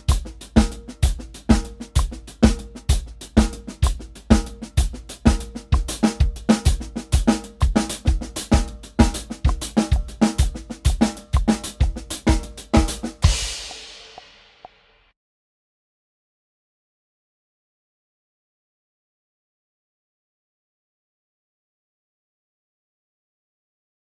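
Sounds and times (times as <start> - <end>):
drum kit playing: 0.0 - 14.9.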